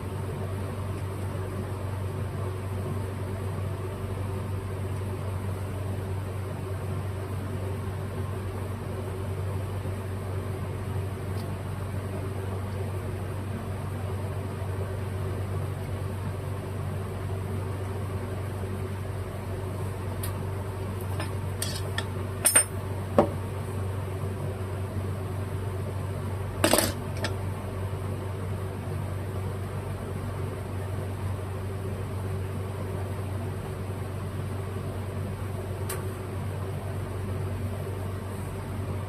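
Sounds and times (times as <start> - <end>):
steady low hum: 0.0 - 39.0
metal parts and tools clinking: 21.1 - 22.7, 26.6 - 27.3
metal parts rattling: 21.1 - 22.7, 26.6 - 27.3.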